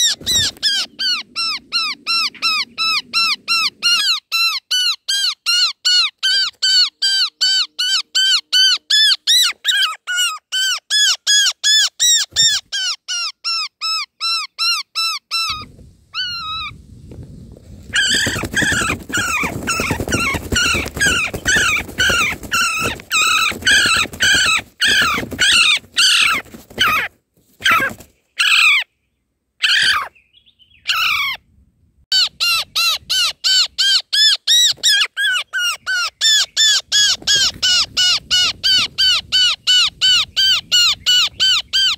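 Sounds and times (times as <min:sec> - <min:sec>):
loud rustling and scuffling: 0:17.5 - 0:28.1
nestlings harsh begging calls: 0:17.9 - 0:28.9.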